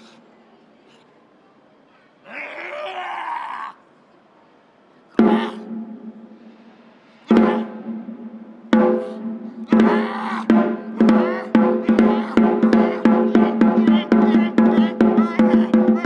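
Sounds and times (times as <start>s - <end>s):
taiko drum strokes: 5.2s - 16.0s.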